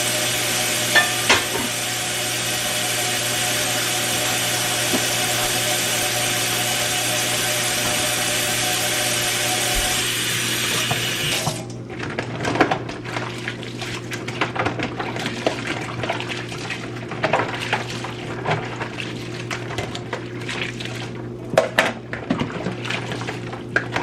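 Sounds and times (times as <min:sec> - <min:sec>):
tap running: 0:00.0 - 0:12.8
items clattering at sink: 0:00.9 - 0:01.8, 0:10.7 - 0:20.9, 0:21.5 - 0:24.0.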